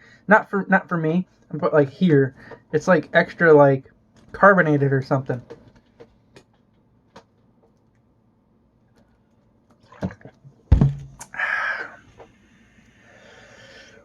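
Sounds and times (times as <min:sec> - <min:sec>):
sharp thunk: 0:10.7 - 0:11.3.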